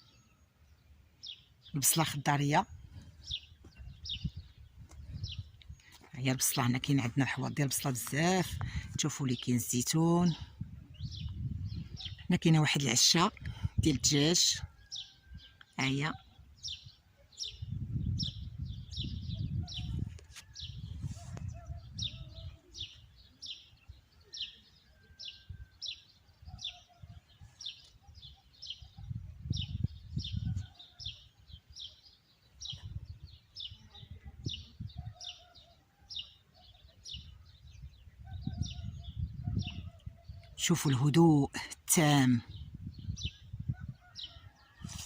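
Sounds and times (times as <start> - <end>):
small songbird chirping: 0.0 - 45.0
microphone low rumble: 2.7 - 5.8, 10.2 - 12.4, 17.6 - 23.3, 28.9 - 30.7, 37.1 - 40.5, 42.4 - 44.0.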